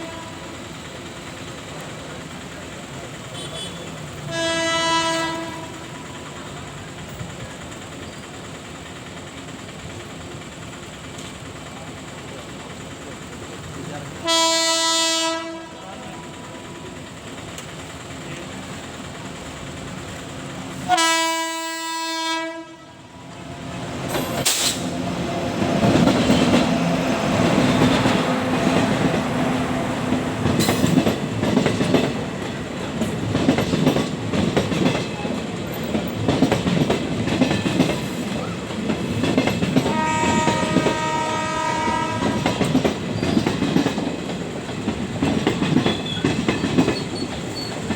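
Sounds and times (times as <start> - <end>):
locomotive horn blasts: 0.0 - 0.5, 3.4 - 5.8, 14.2 - 15.8, 20.8 - 23.2, 39.8 - 42.6
train wheels clattering over rails: 0.0 - 47.9.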